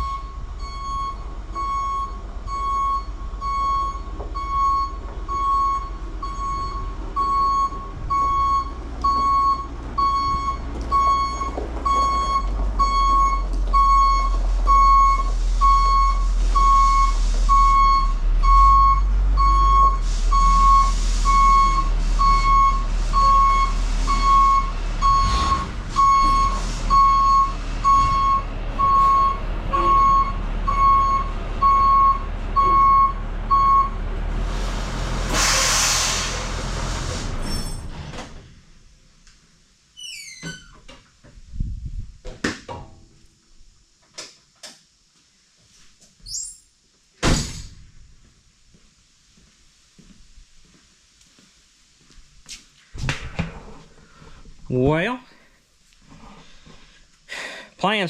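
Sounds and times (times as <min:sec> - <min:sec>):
reversing alarm beeping: 0:00.0 - 0:34.0
diesel engine idling: 0:00.0 - 0:37.4
bursts of hiss: 0:34.8 - 0:37.4.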